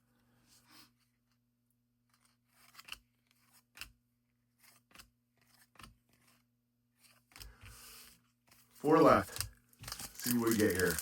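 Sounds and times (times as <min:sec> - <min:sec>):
trading cards rustling: 0:08.5 - 0:11.0.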